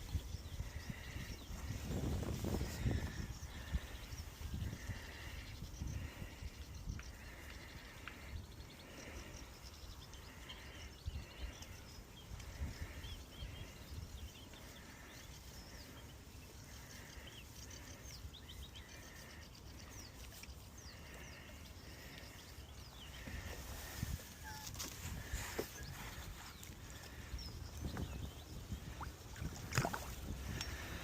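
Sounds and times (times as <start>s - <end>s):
wind rumbling on microphone: 0.0s - 9.2s, 23.0s - 31.0s
birds chirping and singing: 0.1s - 31.0s.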